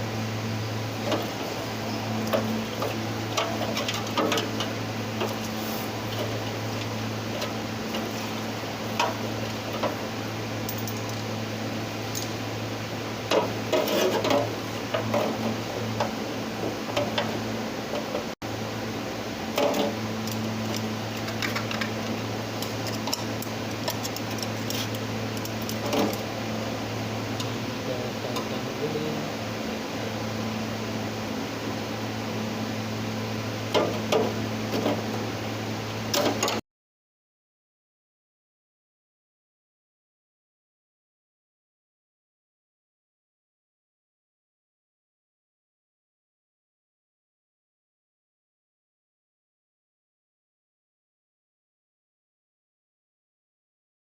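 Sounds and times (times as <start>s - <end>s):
low electric hum: 0.0s - 36.6s.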